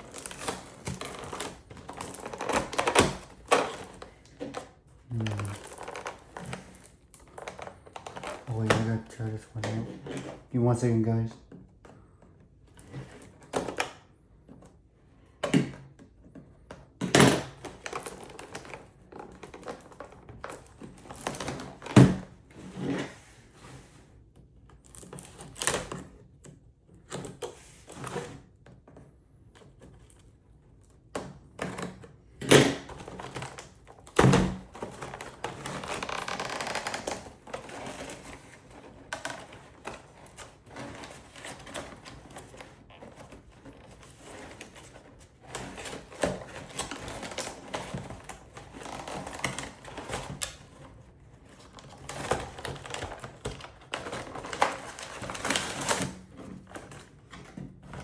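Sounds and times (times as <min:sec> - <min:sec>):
packaging scraping or rustling: 0:00.0 - 0:10.6, 0:32.9 - 0:58.0.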